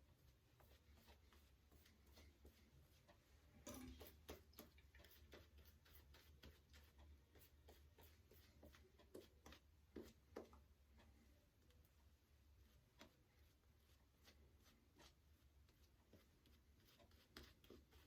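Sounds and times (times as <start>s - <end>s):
shaving brush swishing lather: 0.0s - 10.5s, 12.5s - 18.0s.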